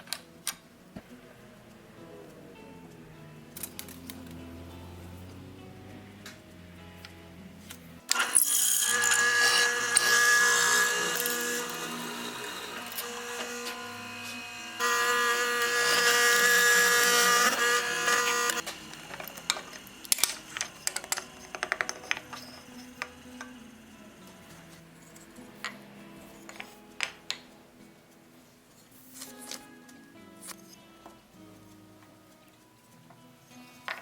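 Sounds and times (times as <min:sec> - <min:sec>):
power tool cutting wood: 0:08.1 - 0:24.6.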